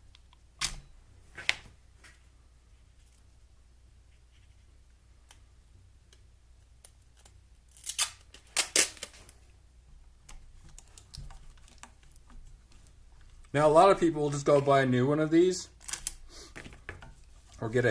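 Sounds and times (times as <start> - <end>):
foil tape ripping: 7.1 - 9.4
handling clicks and rustles: 10.2 - 14.9.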